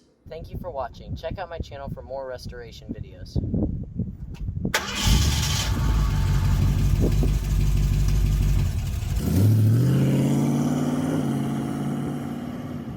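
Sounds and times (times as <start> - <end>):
car engine revving: 4.8 - 12.9.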